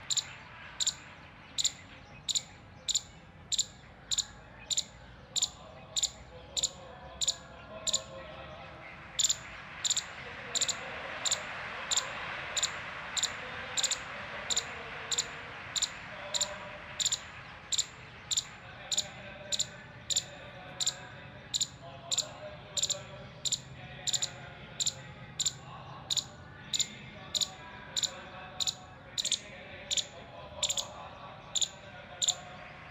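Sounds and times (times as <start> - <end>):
squirrel high-pitched alarm chips: 0.1 - 1.0, 1.6 - 8.1, 9.2 - 21.0.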